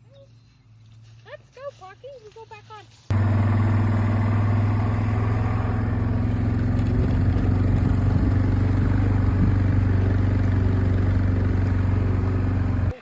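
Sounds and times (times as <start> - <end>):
vehicle engine running: 3.1 - 13.0.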